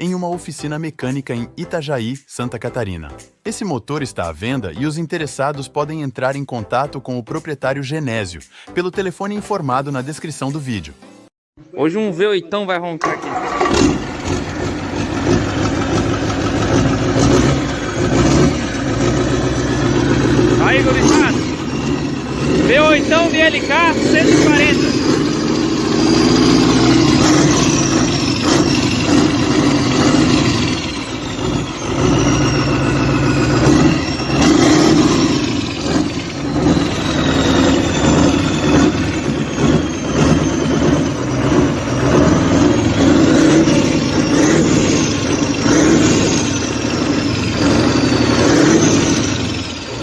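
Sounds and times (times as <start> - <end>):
diesel engine revving: 13.1 - 50.0.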